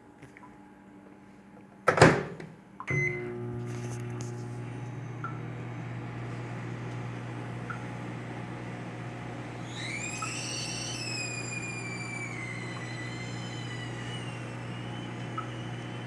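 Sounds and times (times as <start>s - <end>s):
microwave door banging shut: 1.9s - 2.4s
microwave starting clunk: 1.9s - 3.6s
microwave humming: 1.9s - 16.0s.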